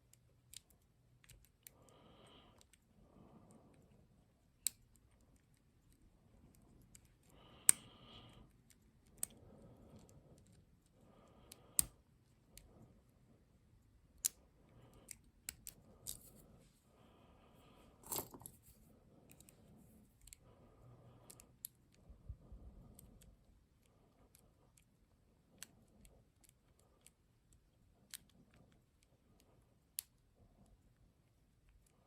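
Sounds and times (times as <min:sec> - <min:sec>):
lock pick scraping: 0:15.5 - 0:16.4.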